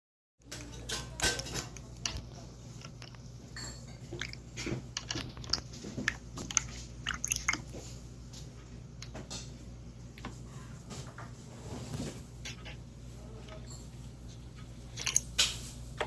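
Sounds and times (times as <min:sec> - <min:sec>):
slime squelching: 0:04.0 - 0:08.0, 0:14.9 - 0:15.3.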